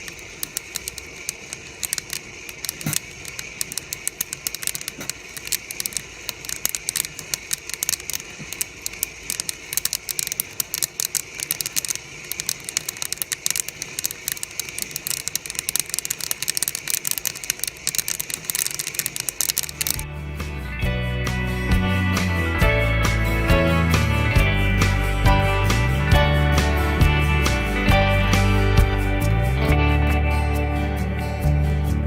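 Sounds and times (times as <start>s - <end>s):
coffee beans popping: 0.0s - 20.1s
roaster background noise: 0.0s - 32.0s.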